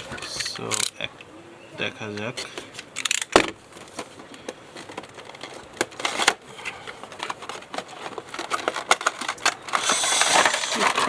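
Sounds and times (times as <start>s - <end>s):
packaging rustling: 2.8s - 11.0s.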